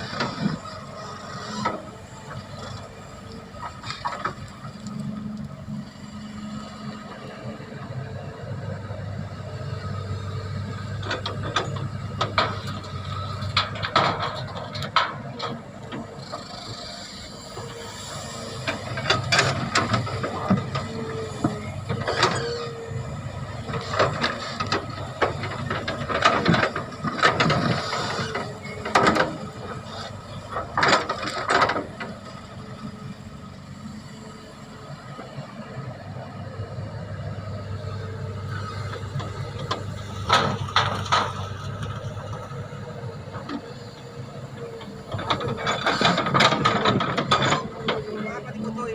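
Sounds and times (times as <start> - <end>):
excavator diesel engine running: 0.0 - 48.9
metal clanks and squeals: 11.1 - 32.2, 44.6 - 48.9.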